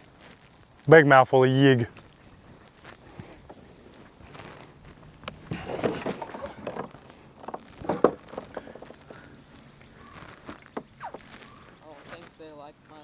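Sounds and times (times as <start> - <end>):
knocks and clicks of gear: 5.2 - 9.2.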